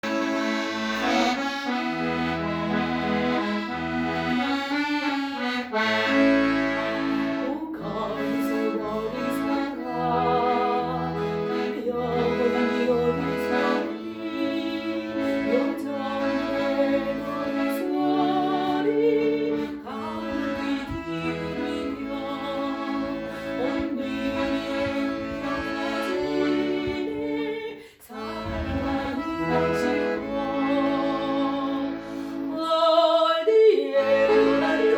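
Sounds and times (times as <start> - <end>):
accordion melody: 0.0 - 34.9
rhythmic bass accompaniment: 19.5 - 27.4, 28.2 - 31.2.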